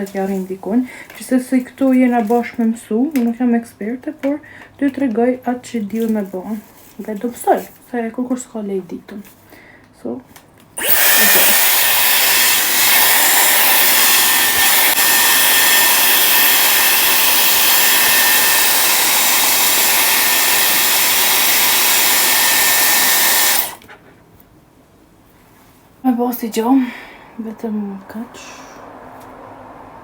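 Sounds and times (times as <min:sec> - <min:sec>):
hair styler blowing air: 0:10.8 - 0:23.8.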